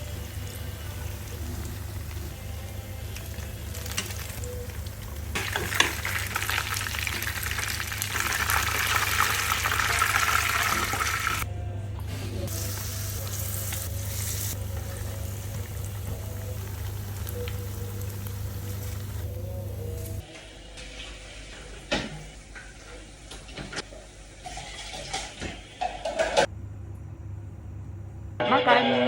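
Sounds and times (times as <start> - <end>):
food sizzling in a pan: 0.0 - 11.5, 12.4 - 20.2
steady low hum: 26.5 - 29.0.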